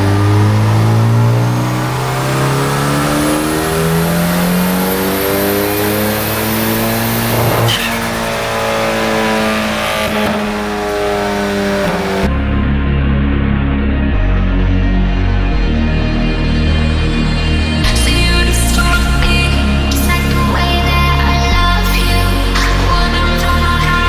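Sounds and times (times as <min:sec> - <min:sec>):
car engine accelerating: 0:00.0 - 0:12.9.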